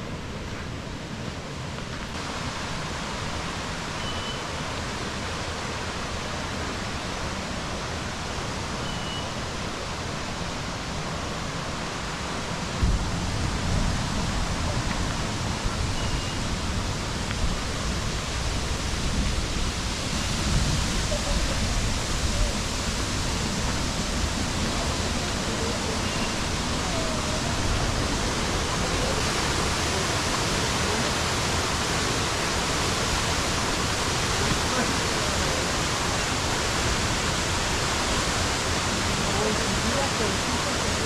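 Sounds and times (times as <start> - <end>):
waterfall rushing: 0.0 - 41.0
heavy low rumble: 12.7 - 38.8.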